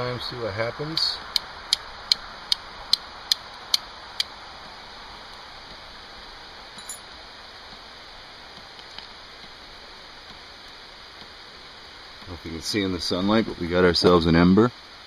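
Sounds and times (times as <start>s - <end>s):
faint hiss: 0.0s - 15.0s
flint striking steel: 6.8s - 7.1s.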